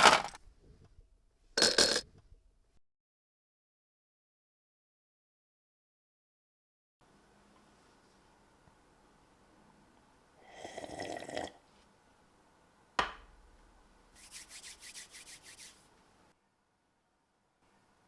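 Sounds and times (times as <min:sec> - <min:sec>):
scraping strokes: 0:14.2 - 0:15.9.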